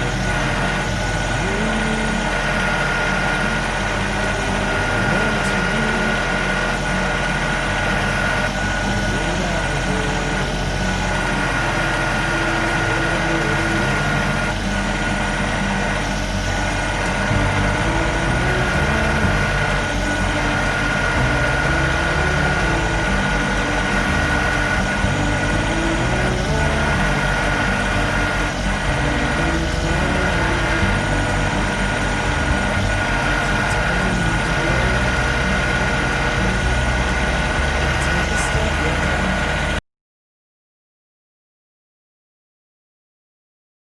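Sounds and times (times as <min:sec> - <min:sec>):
high-pitched whine: 0:00.0 - 0:39.8
tractor engine running: 0:00.0 - 0:39.8.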